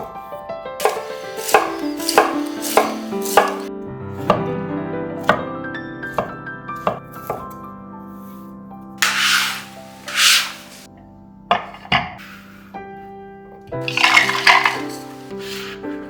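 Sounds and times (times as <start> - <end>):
background music with held notes: 0.0 - 9.0
knife chopping on cutting board: 0.8 - 3.7, 6.2 - 7.5.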